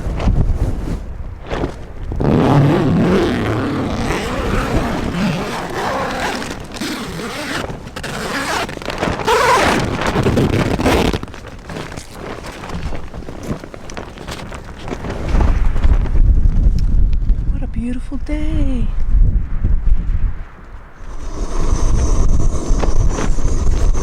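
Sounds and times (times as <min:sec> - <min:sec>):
strong wind gusting: 0:00.0 - 0:11.1, 0:14.5 - 0:24.0
tent fabric flapping: 0:00.0 - 0:17.5.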